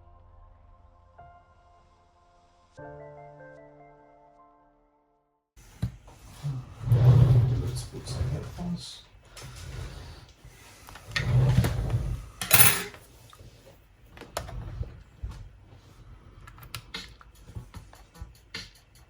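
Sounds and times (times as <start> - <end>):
handling noise: 11.0 - 15.9.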